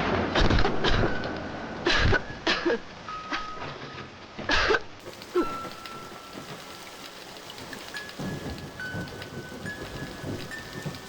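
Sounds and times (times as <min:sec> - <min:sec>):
heavy rainfall: 0:05.0 - 0:11.0.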